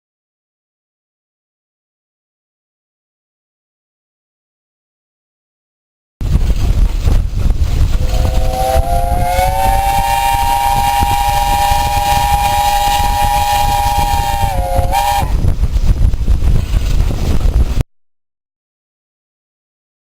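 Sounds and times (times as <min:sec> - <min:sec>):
low rumble: 0:06.2 - 0:17.8
steam locomotive whistle: 0:08.1 - 0:15.4.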